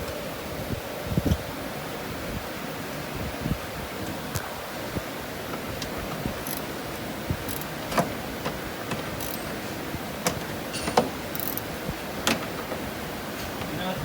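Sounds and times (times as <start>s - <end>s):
background hiss: 0.0s - 14.0s
metallic clicks of hand tools: 6.4s - 6.7s, 7.5s - 8.1s, 9.1s - 9.6s, 10.2s - 11.7s.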